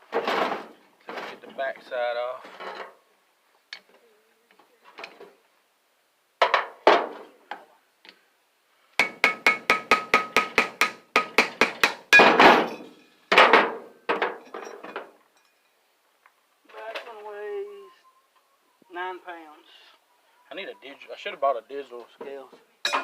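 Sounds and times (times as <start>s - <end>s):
hammer striking metal housing: 9.0s - 13.7s.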